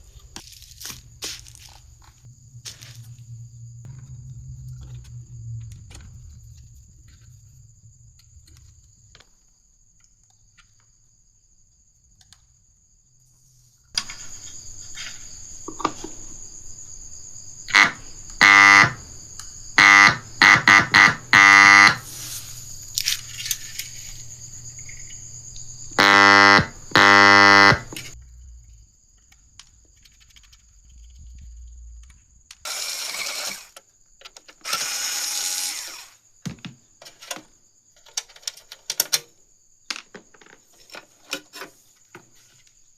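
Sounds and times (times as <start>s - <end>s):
loud harsh buzzing tones: 17.7s - 19.1s, 19.8s - 22.1s, 25.9s - 28.2s
thin high whine: 17.7s - 19.1s, 26.0s - 28.2s.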